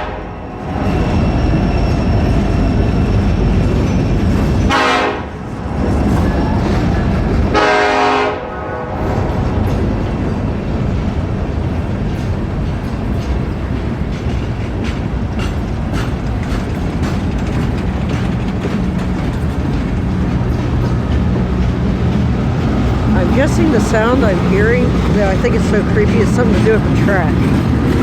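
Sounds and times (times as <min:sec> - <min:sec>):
train horn blast: 0:00.0 - 0:00.5, 0:04.7 - 0:05.3, 0:07.5 - 0:09.6
passing train rumble: 0:00.0 - 0:28.0.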